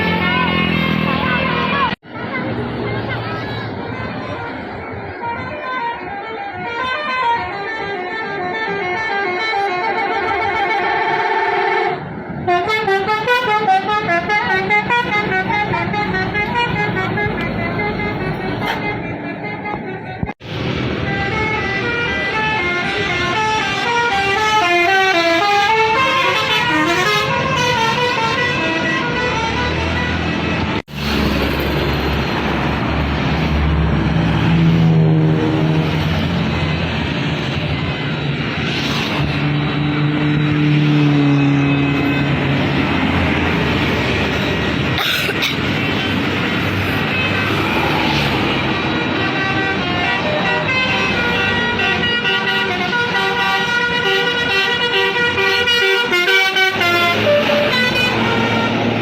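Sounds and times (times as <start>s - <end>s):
bus engine rumble: 0.0s - 59.0s
tyre and road noise: 0.0s - 59.0s
bus musical horn tune: 3.9s - 20.4s, 21.0s - 30.8s, 48.8s - 59.0s.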